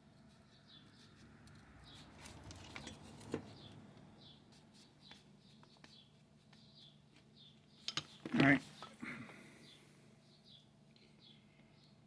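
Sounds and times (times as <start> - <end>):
faint steady hum: 0.0 - 12.0
bird chirping: 3.5 - 7.9, 9.6 - 12.0.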